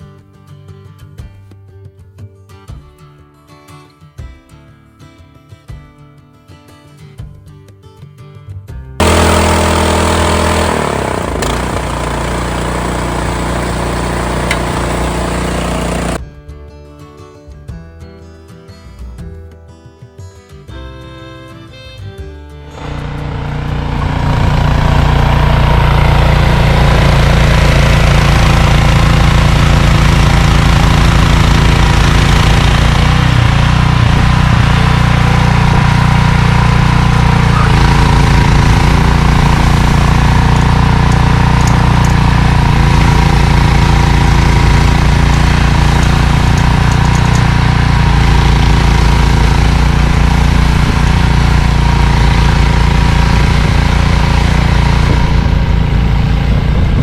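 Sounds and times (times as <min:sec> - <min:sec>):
snowblower engine running: 0:09.0 - 0:16.2, 0:22.7 - 0:57.0.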